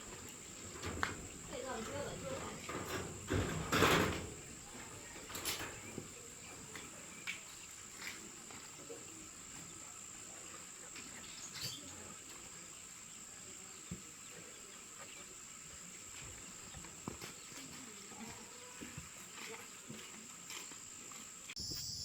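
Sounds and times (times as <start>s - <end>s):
faint knocks and clicks: 0.2s - 7.4s
high-pitched insect drone: 21.6s - 22.0s.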